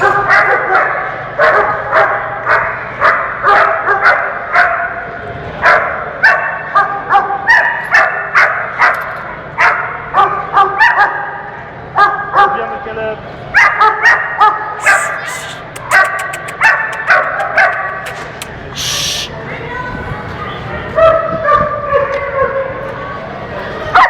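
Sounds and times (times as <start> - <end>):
dog barking: 0.0 - 4.9, 5.6 - 9.0, 9.6 - 11.3, 13.6 - 19.3.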